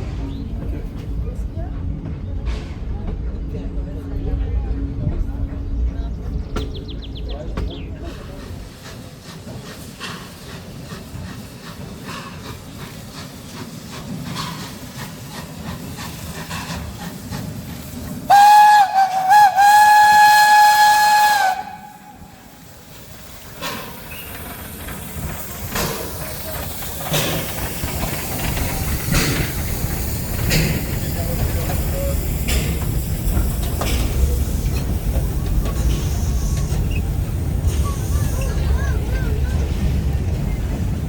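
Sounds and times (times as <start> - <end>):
train rumble: 0.0 - 41.0
train clicks: 6.3 - 41.0
steam locomotive whistle: 18.3 - 22.4.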